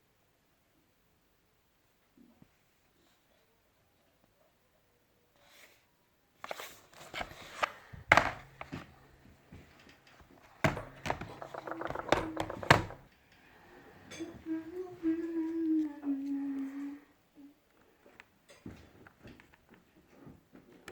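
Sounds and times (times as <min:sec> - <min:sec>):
plastic laptop case clicks and knocks: 0:07.2 - 0:08.9, 0:10.3 - 0:13.1.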